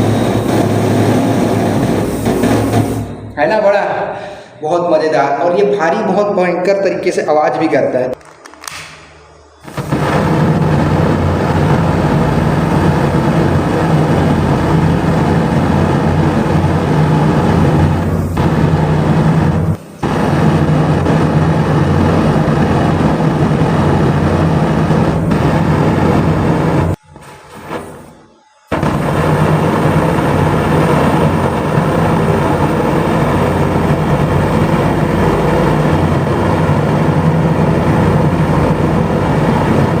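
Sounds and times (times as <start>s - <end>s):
jet of fire rushing: 0.0s - 3.2s, 9.6s - 27.0s, 28.7s - 40.0s.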